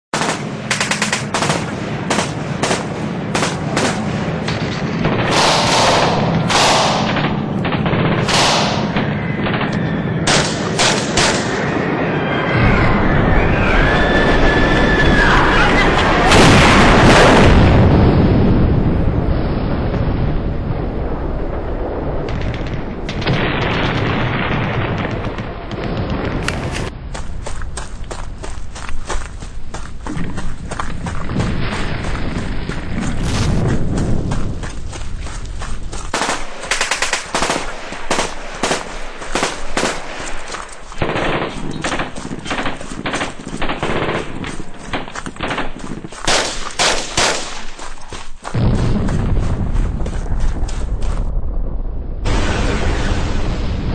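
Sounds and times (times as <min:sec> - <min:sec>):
artillery explosion rumble: 0:01.2 - 0:27.0, 0:30.0 - 0:35.0, 0:35.6 - 0:47.3, 0:48.4 - 0:53.9
crackling: 0:22.2 - 0:51.4
machine-gun bursts: 0:36.1 - 0:47.7.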